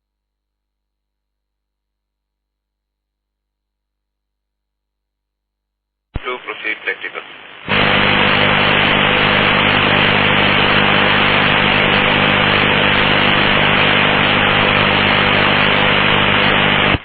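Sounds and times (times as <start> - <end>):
low electrical hum: 6.2 - 17.0
radio static hiss: 6.2 - 17.0.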